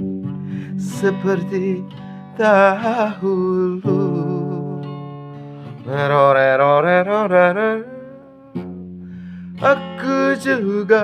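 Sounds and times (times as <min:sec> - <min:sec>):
guitar chords: 0:00.0 - 0:11.0
person singing with vibrato: 0:00.6 - 0:05.0, 0:05.7 - 0:08.6, 0:09.6 - 0:11.0.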